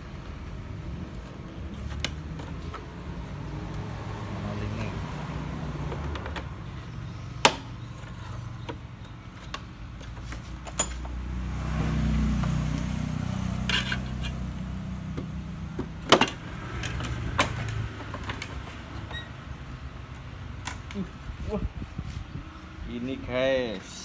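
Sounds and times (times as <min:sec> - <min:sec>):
tools clicking on plastic panels: 0:15.1 - 0:19.2.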